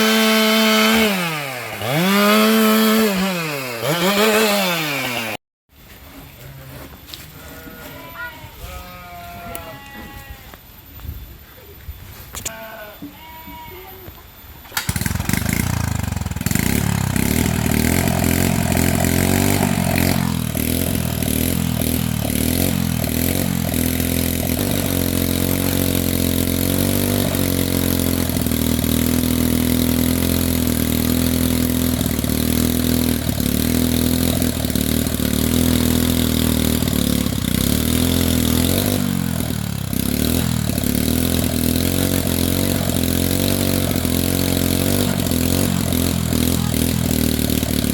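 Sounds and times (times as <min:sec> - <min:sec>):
small petrol engine idling: 0:14.8 - 0:47.9.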